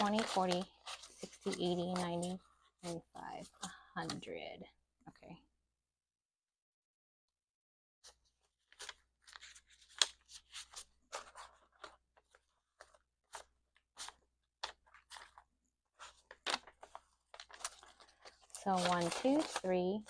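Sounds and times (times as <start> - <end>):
banknotes crinkling and rustling: 0.0 - 4.2, 8.1 - 20.0.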